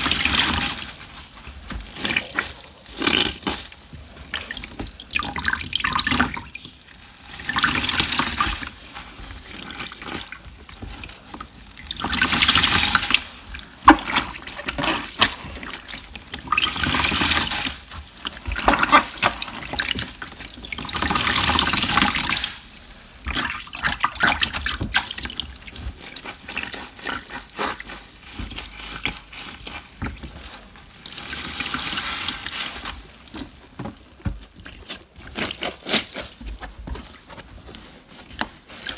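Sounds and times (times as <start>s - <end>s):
dripping and crackling: 0.0s - 38.9s.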